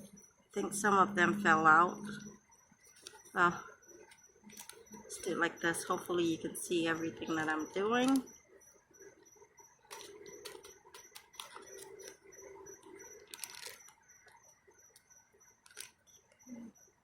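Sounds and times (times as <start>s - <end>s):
seeds ticking into pot: 2.9s - 8.4s, 9.8s - 16.5s
seed packet rustling: 9.9s - 12.1s, 13.2s - 14.0s, 15.6s - 16.0s.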